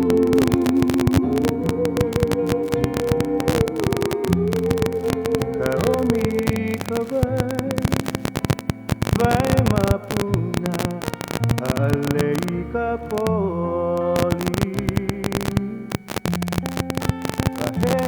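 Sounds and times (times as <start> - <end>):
crackling clicks: 0.0 - 18.0.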